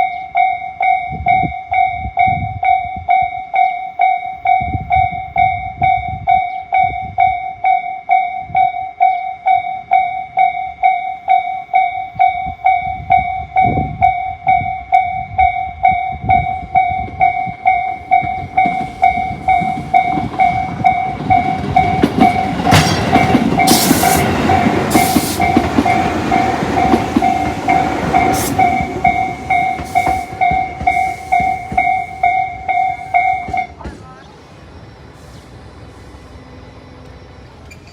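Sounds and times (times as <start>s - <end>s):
level crossing warning bell: 0.0s - 34.0s
train wheels clacking over joints: 17.1s - 34.2s.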